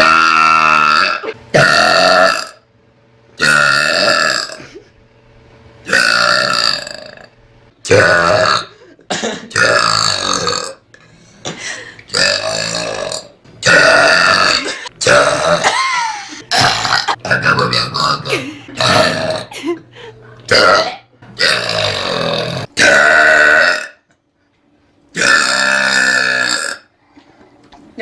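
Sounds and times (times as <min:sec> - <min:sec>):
girl burping: 0:00.0 - 0:02.6, 0:03.4 - 0:04.7, 0:12.1 - 0:19.8, 0:20.5 - 0:24.0.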